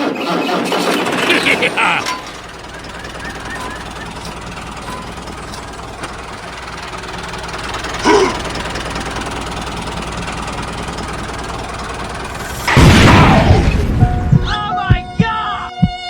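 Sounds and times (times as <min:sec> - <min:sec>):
small engine running: 0:00.0 - 0:13.0
loud burst: 0:12.3 - 0:14.4.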